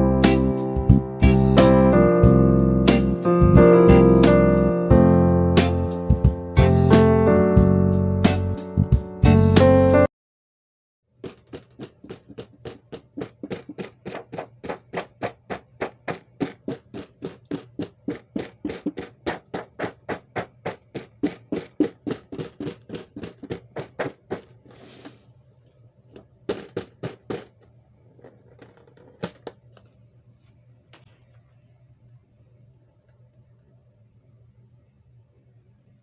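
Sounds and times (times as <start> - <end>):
rapid sharp clicks: 11.2 - 24.5.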